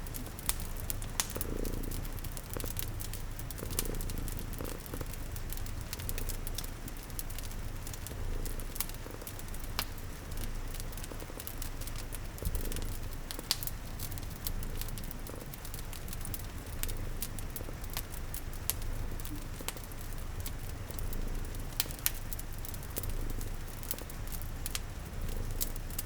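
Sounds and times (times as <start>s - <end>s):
cat purring: 0.0s - 26.0s
fire crackling and popping: 0.0s - 26.0s
soft rain patter: 0.0s - 26.0s.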